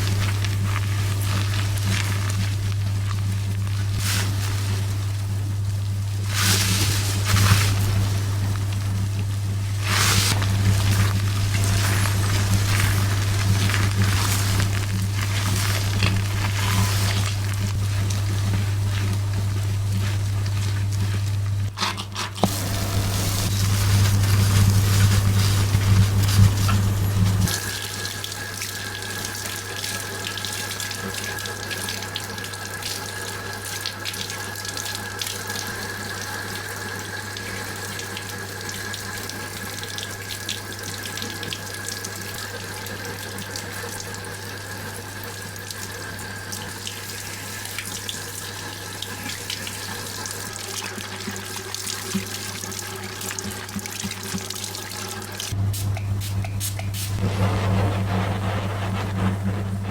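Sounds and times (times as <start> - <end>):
water splashing on hair: 0.0 - 21.8, 22.4 - 36.6.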